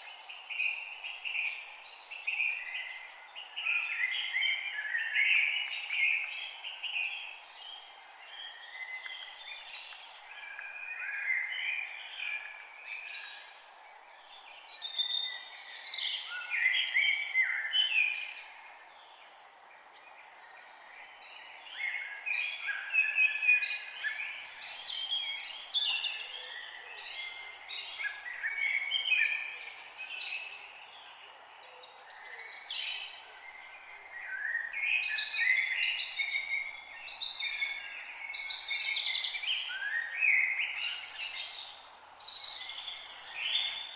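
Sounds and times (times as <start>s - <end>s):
songbirds chirping and singing: 0.0s - 43.9s.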